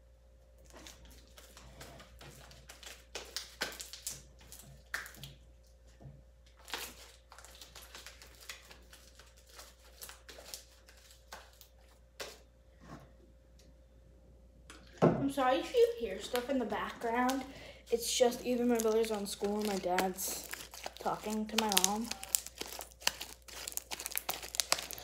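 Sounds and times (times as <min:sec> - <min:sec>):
faint steady hum: 0:00.0 - 0:25.0
sticky slime clicks and squelches: 0:18.7 - 0:25.0.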